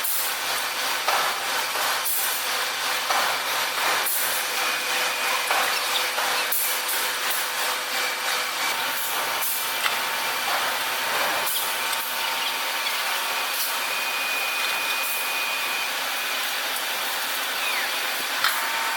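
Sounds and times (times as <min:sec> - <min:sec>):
industrial machinery running: 0:00.0 - 0:18.9.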